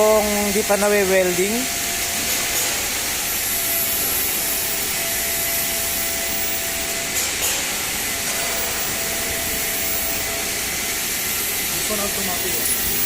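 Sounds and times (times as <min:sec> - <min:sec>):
workshop machinery hiss: 0:00.0 - 0:13.0.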